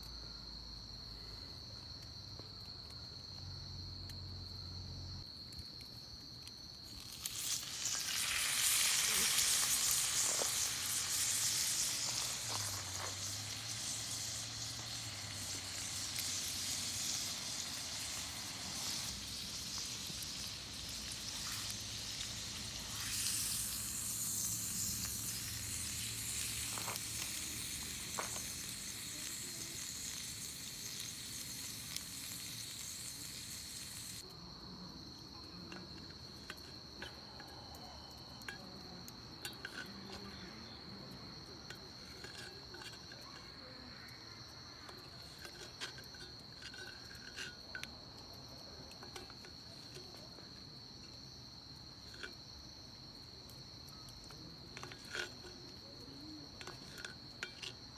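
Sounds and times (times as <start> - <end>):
insects trilling: 0.0 - 57.9
hissing rush of noise: 7.2 - 34.2.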